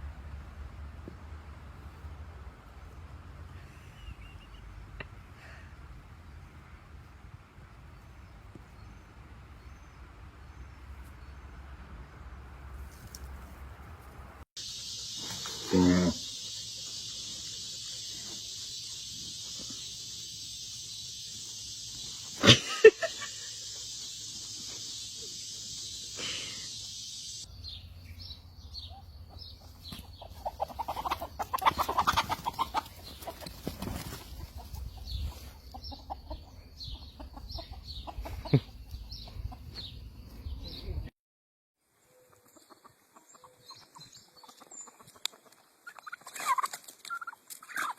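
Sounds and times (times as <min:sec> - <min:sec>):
steady high hiss: 0:14.6 - 0:27.5
chickens chirping and clucking: 0:14.7 - 0:41.1, 0:42.2 - 0:47.9.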